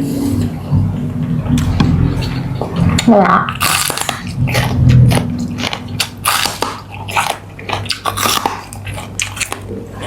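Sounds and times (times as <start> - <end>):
person chewing food: 1.4 - 10.0.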